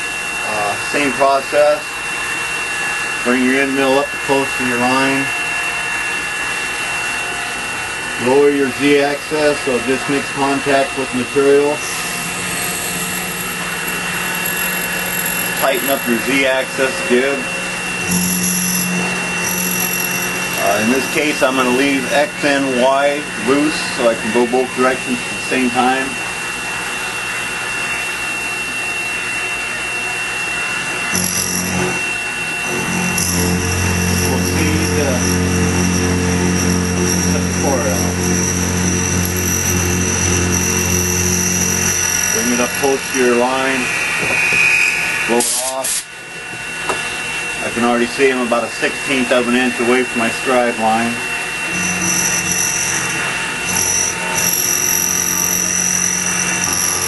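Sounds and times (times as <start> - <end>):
milling machine cutting metal: 0.0 - 57.0
low steady hum: 10.9 - 26.3, 31.1 - 45.3.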